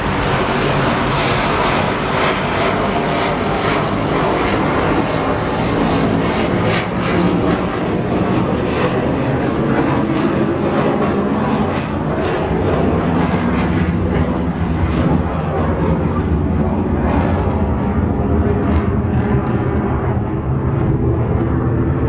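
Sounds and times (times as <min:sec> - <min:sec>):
military jet flying over: 0:00.0 - 0:22.0.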